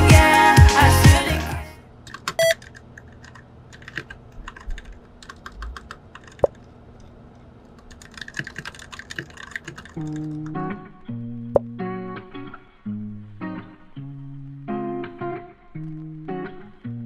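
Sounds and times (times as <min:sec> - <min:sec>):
keyboard typing: 0:02.1 - 0:06.7, 0:07.8 - 0:10.6
short beep: 0:02.4 - 0:02.6.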